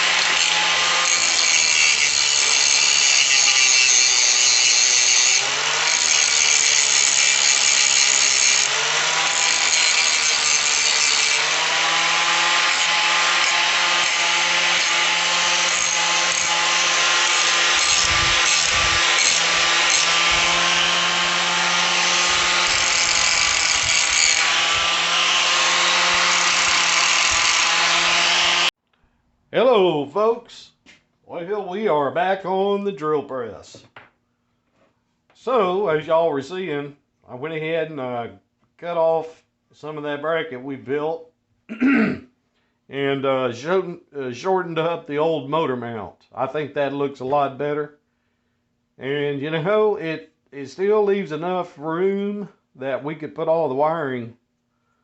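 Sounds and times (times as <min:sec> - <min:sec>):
power tool grinding metal: 0:00.0 - 0:28.7.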